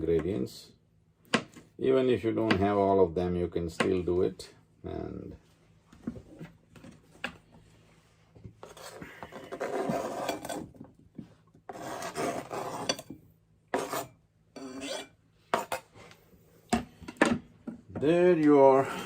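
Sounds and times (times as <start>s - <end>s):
kitchen utensil scraping food: 8.6s - 10.8s, 11.7s - 16.2s.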